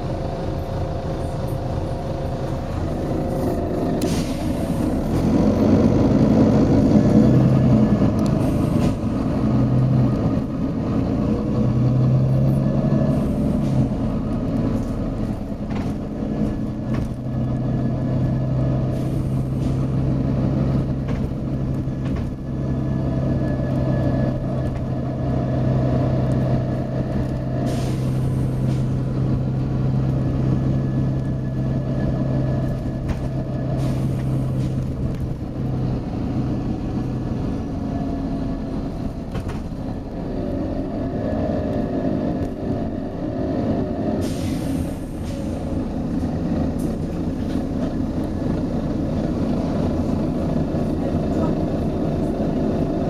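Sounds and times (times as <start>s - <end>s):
bus diesel engine drone: 0.0s - 53.0s
air brake hiss: 4.0s - 5.0s, 27.6s - 29.0s, 33.8s - 34.8s, 44.2s - 45.8s.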